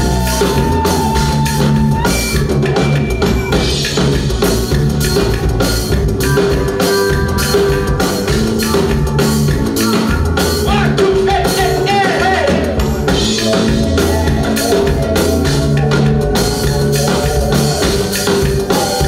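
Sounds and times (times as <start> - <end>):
bass line: 0.0 - 19.0
drum kit beat: 0.0 - 19.0
people singing: 16.7 - 19.0.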